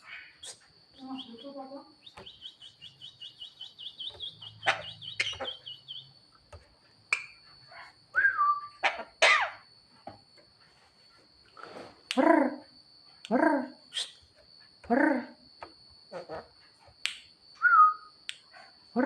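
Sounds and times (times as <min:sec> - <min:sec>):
bird chirping quickly: 0:00.4 - 0:06.2
bird harsh squawks: 0:02.2 - 0:06.0, 0:08.8 - 0:09.7.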